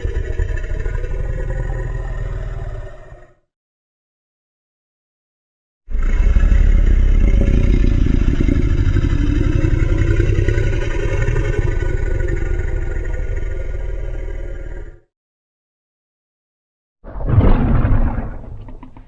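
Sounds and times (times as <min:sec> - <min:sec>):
deep rumbling rattle: 0:06.0 - 0:14.9, 0:17.1 - 0:19.0.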